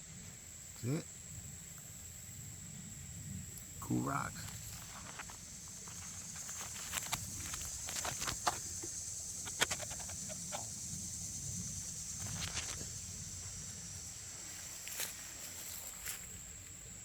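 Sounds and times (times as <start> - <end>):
sharp clicks and rustles: 4.5 - 10.7.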